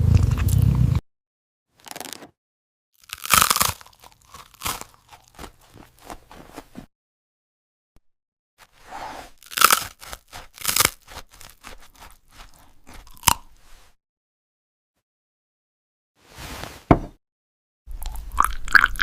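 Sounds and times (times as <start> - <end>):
crunching and chewing cookie: 1.8 - 2.3, 3.0 - 6.9, 9.3 - 13.8, 17.9 - 19.0.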